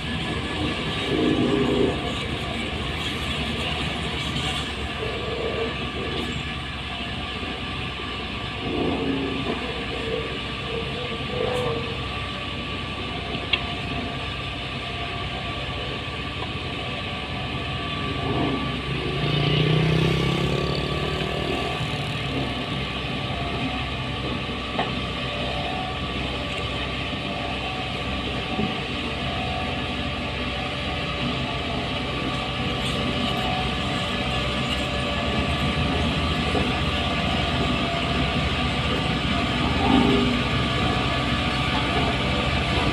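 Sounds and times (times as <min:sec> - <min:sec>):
construction machinery engine running: 0:00.0 - 0:42.9.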